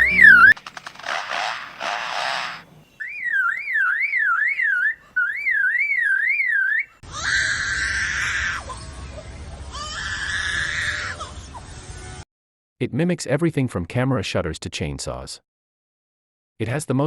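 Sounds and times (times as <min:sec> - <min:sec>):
lyrebird mimicking car alarm: 0:00.0 - 0:07.0.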